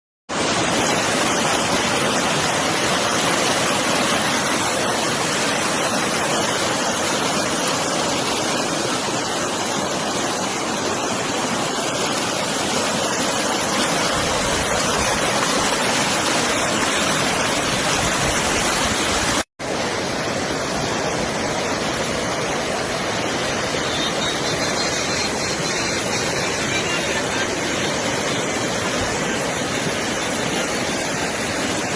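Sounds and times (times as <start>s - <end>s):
river rushing: 0.3s - 31.9s.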